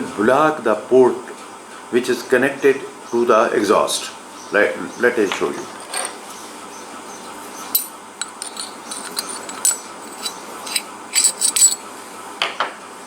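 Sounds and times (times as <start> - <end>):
metal parts clicking and clinking: 5.8 - 6.2, 7.7 - 11.9.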